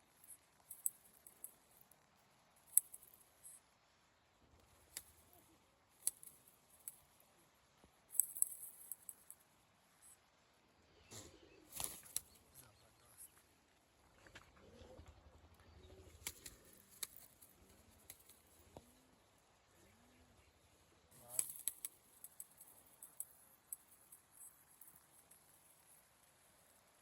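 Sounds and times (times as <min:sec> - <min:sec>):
pigeon wings flapping: 0:16.1 - 0:18.4.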